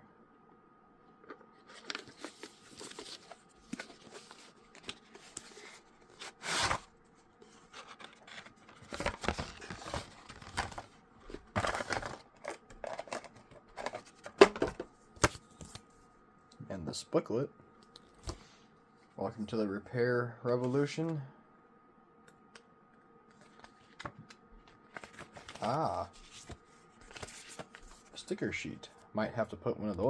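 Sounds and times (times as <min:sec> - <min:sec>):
paper rustling and tearing: 0:01.6 - 0:10.9
cardboard box being opened: 0:01.7 - 0:06.9.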